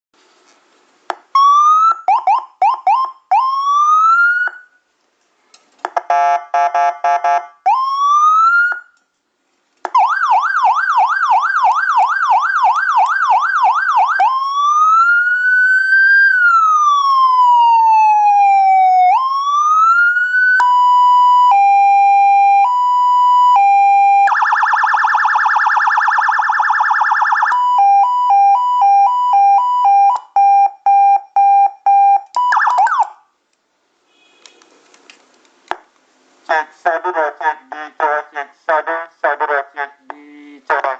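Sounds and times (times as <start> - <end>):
electronic police siren: 1.4 - 4.7, 10.0 - 33.2.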